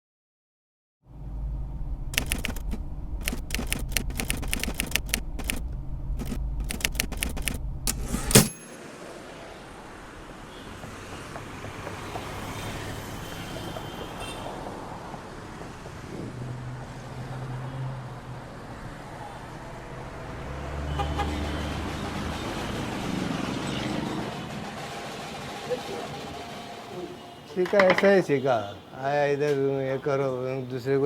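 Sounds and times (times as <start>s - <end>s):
street traffic: 1.1s - 31.0s
typewriter keys clacking: 2.2s - 5.6s, 6.2s - 8.5s.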